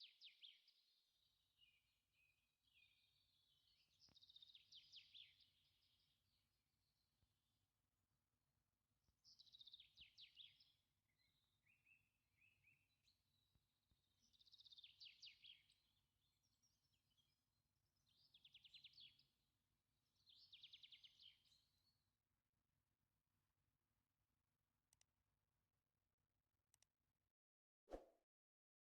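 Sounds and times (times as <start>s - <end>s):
soft bird chirps: 0.0s - 7.5s, 9.0s - 19.4s, 20.0s - 22.1s.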